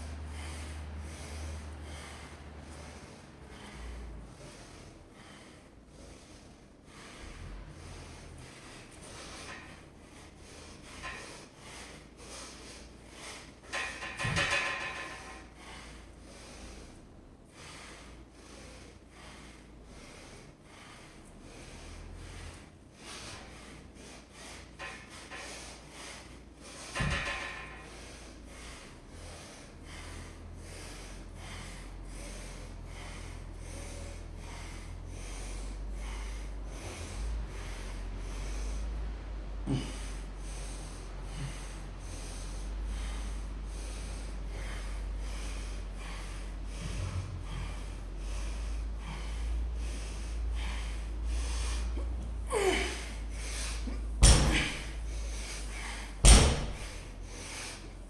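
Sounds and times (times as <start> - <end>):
low steady rumble: 0.0 - 58.0
person breathing hard: 0.0 - 58.0
loud thud: 54.2 - 54.9, 56.2 - 57.0.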